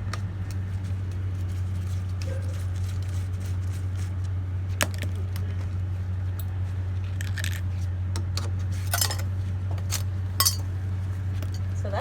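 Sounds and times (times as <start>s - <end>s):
steady low hum: 0.0s - 12.0s
light metallic clinks: 8.9s - 9.2s, 10.4s - 10.7s.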